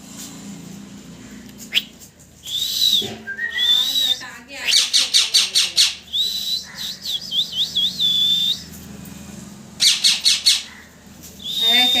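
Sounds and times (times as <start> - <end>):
parrot whistling: 1.7 - 8.7, 9.8 - 10.7, 11.4 - 12.0
parrot sharp chirps: 2.5 - 8.6, 9.8 - 10.7.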